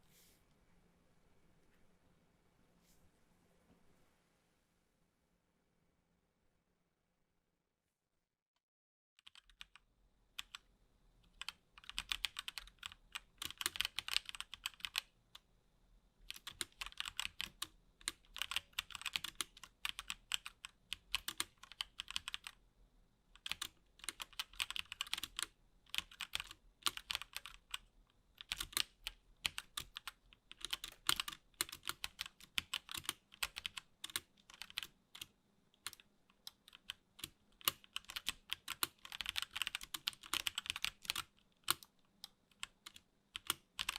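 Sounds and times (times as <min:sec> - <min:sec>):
mechanical keyboard typing: 0:09.2 - 0:09.8, 0:10.4 - 0:10.7, 0:11.3 - 0:15.2, 0:16.2 - 0:22.6, 0:23.4 - 0:43.9.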